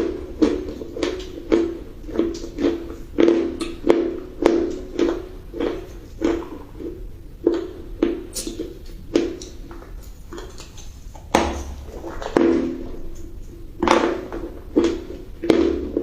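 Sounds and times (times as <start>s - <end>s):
crunchy bites and chewing: 0.0s - 16.0s.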